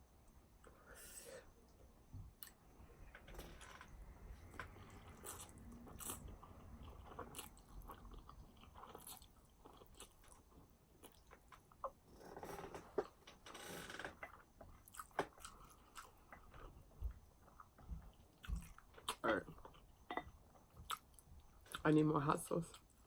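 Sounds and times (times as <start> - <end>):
person chewing food: 4.4 - 12.0, 14.2 - 21.8.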